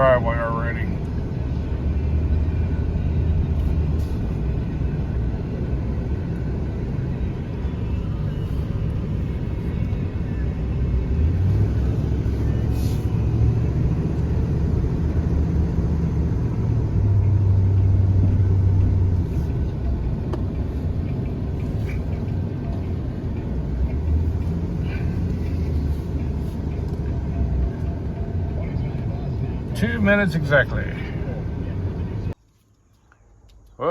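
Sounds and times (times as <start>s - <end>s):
car engine and road rumble: 0.0s - 33.9s.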